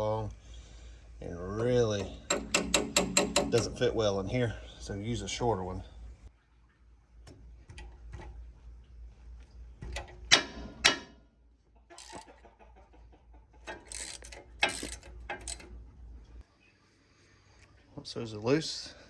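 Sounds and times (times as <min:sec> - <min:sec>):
ratchet clicking: 0:02.0 - 0:03.9, 0:12.0 - 0:12.3, 0:13.7 - 0:15.8.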